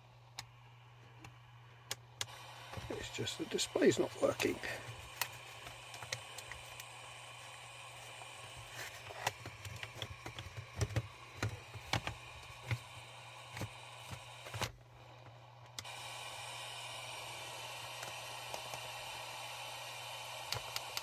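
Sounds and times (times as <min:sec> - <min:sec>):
steady hum: 0:00.0 - 0:21.0
radio receiver hiss: 0:02.2 - 0:14.7.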